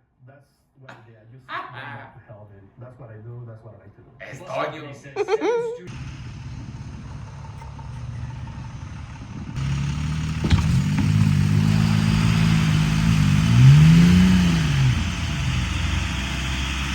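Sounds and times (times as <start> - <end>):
vehicle engine revving: 5.9 - 16.9.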